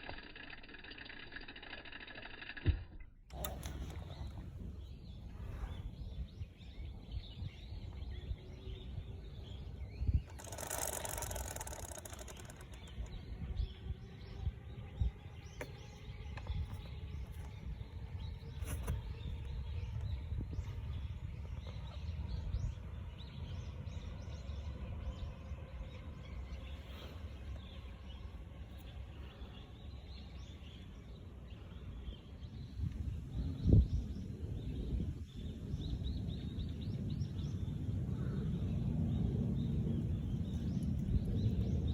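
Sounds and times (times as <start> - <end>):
steady low rumble: 12.4 - 41.9.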